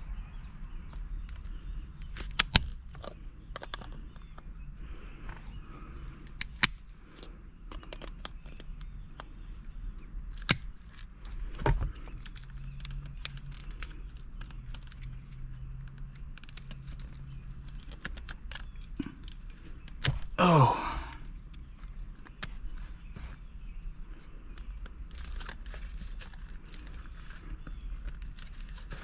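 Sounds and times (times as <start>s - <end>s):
sharp clicks and small rattles: 0.8s - 4.5s, 5.8s - 20.4s, 24.2s - 29.0s.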